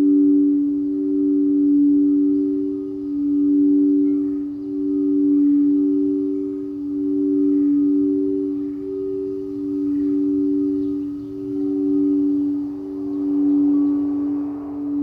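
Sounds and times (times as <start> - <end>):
singing bowl ringing: 0.0 - 15.0.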